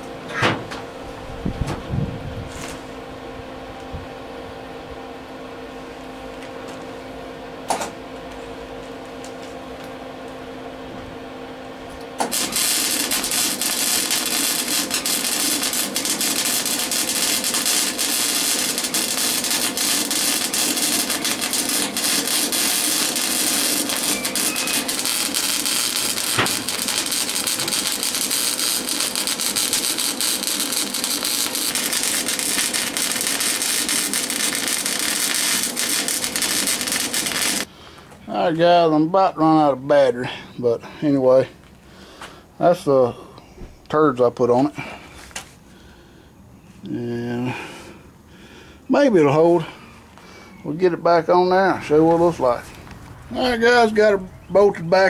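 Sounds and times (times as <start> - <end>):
steady hum: 0.0 - 55.0
welding crackle and pops: 12.2 - 37.7.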